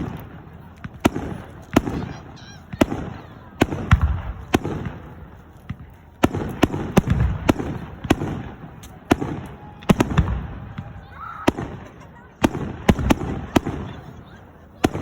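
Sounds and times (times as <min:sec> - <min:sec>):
fireworks bangs with rumble: 0:00.0 - 0:15.0.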